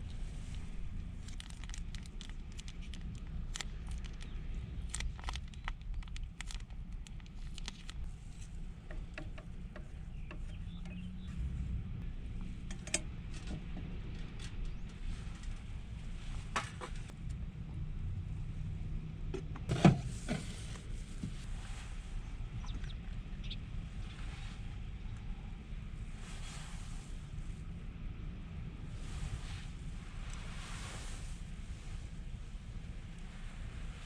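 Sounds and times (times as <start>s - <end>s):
low rumble: 0.0s - 19.7s.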